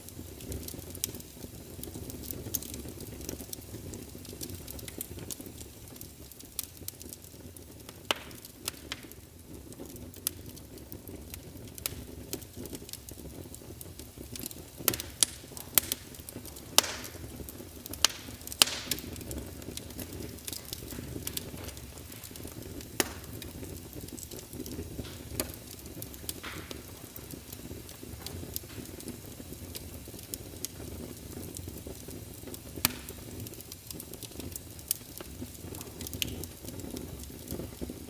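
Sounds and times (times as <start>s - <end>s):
wood fire crackling: 0.0s - 38.0s.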